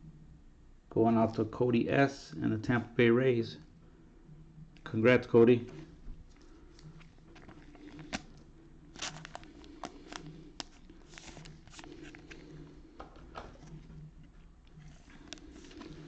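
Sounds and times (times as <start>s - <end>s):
cards rustling: 5.6s - 16.0s.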